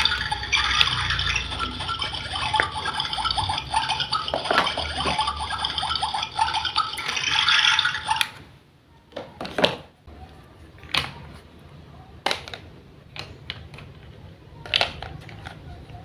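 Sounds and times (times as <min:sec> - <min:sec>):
water pouring: 0:00.0 - 0:08.4.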